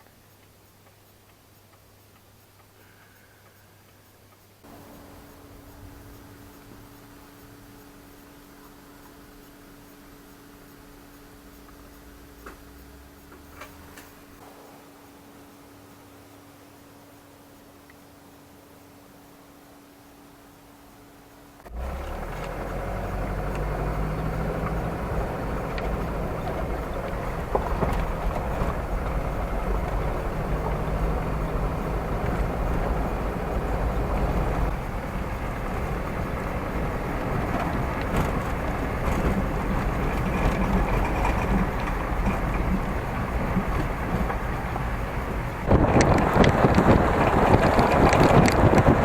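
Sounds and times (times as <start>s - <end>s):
vehicle engine and road rumble: 4.6s - 14.8s, 21.6s - 49.0s.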